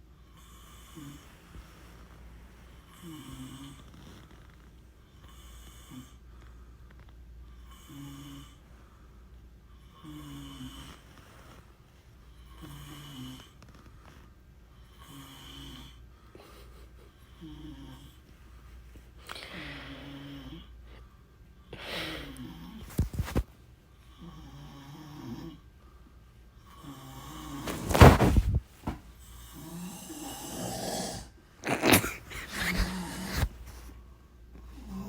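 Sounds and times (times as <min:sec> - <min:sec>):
person snoring: 0:29.5 - 0:33.9.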